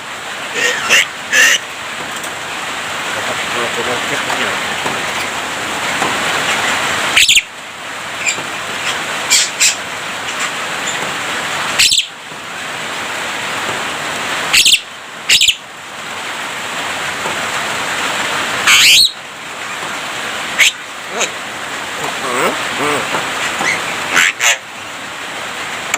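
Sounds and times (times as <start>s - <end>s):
steady hiss: 0.0s - 25.9s
bird whistles and chirps: 7.2s - 7.5s, 11.8s - 12.1s, 14.5s - 15.6s, 18.7s - 19.2s, 20.6s - 20.8s.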